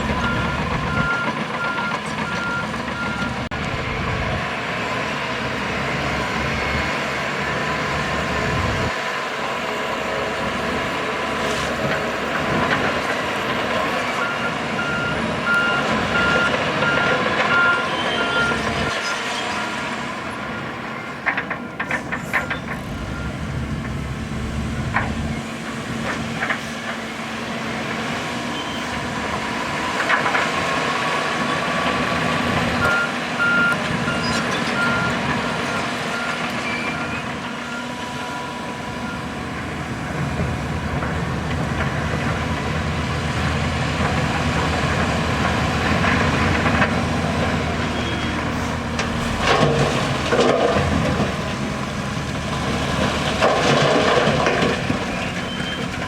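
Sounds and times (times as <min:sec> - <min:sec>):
reversing alarm beeping: 0:00.0 - 0:03.5, 0:14.1 - 0:19.8, 0:21.6 - 0:23.7, 0:32.8 - 0:39.4
heavy diesel machinery running: 0:00.0 - 0:56.0.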